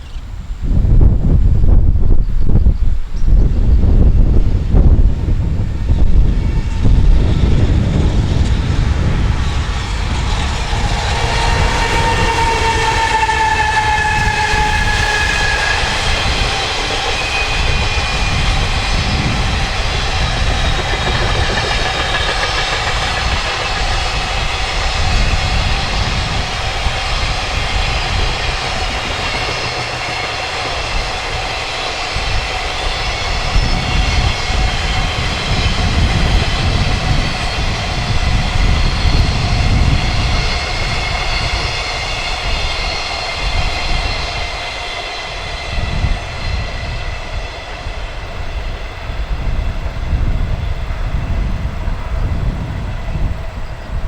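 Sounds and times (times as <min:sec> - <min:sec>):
locomotive whine: 0:00.0 - 0:54.0
wagon wheels rumbling on rails: 0:03.8 - 0:45.0.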